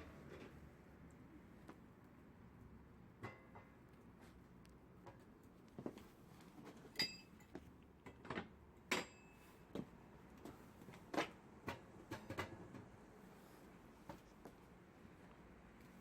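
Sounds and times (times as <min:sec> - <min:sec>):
light knocks and clinks: 0:06.6 - 0:09.4.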